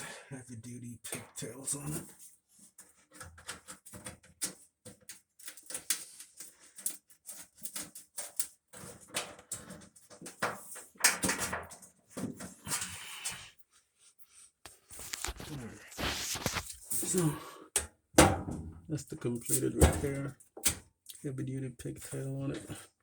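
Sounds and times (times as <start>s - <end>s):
scraping and rustling: 14.2s - 17.5s.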